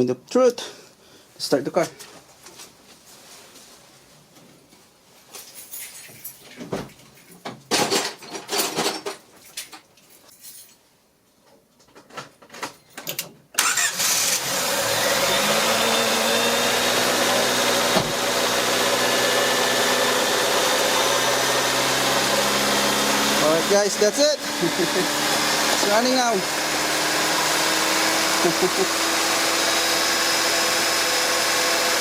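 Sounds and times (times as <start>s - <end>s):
car engine starting and idling: 13.6s - 19.1s.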